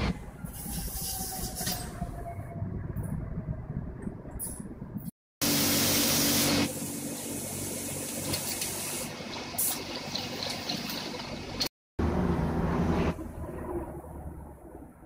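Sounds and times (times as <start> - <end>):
hiss: 5.4 - 9.8.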